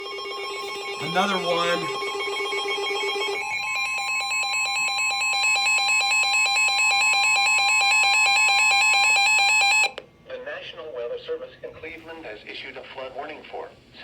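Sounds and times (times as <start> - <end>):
two-tone alarm: 0.0 - 10.0.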